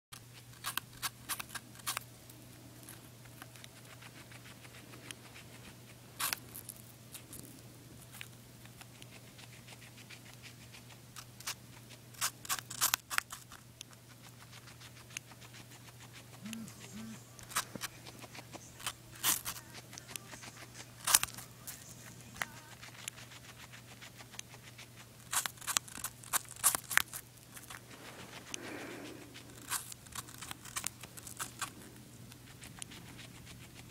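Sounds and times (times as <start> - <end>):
guinea pig crunching apple: 0.2 - 33.9
low steady hum: 0.2 - 33.9.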